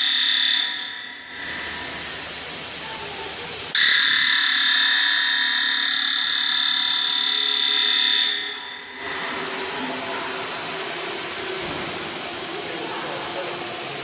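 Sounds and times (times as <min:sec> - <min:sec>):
high-pitched machine whine: 0:00.0 - 0:14.0
rushing hissing machine noise: 0:01.1 - 0:04.4, 0:08.8 - 0:14.0.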